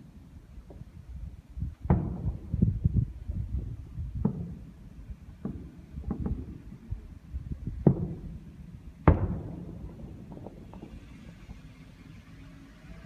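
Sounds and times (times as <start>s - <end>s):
fireworks booming: 1.7s - 12.3s.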